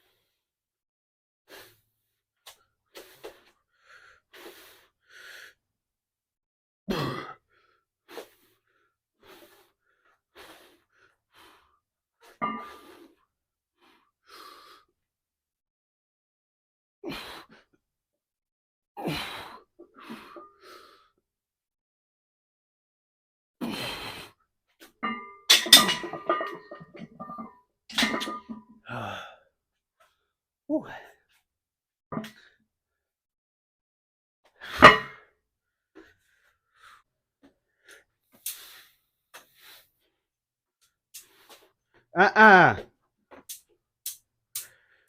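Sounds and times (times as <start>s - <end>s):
man breathing hard: 3.0s - 5.6s, 28.9s - 29.4s.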